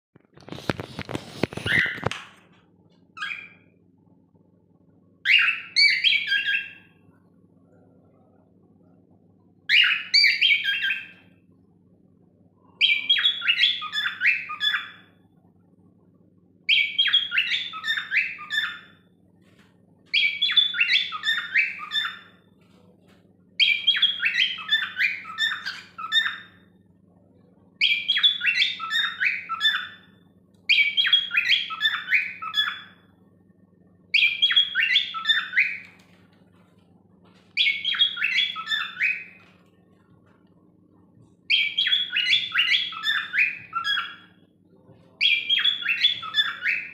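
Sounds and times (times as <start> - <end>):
faint low hum: 0.2 - 46.9
cockatiel warbling and chirping: 1.0 - 2.2, 3.2 - 3.7, 5.2 - 6.9, 9.7 - 11.3, 12.8 - 15.2, 16.7 - 19.0, 20.1 - 22.4, 23.6 - 26.7, 27.8 - 33.1, 34.1 - 36.0, 37.6 - 39.6, 41.5 - 44.4, 45.2 - 46.9.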